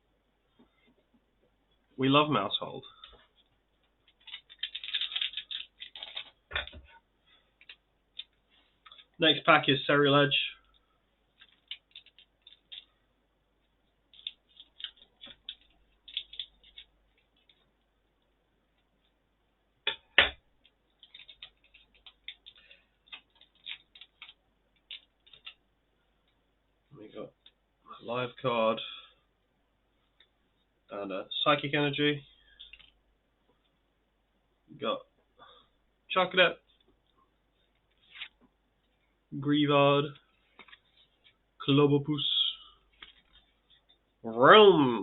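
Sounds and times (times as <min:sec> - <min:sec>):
cards and foil wrapper crinkling: 0:03.8 - 0:06.9, 0:07.6 - 0:09.2, 0:10.6 - 0:13.0, 0:14.1 - 0:17.8, 0:20.6 - 0:25.6, 0:32.4 - 0:33.0, 0:40.5 - 0:41.4, 0:42.9 - 0:44.0
scissors snipping foil: 0:04.1 - 0:06.4, 0:11.4 - 0:12.9, 0:14.1 - 0:17.6.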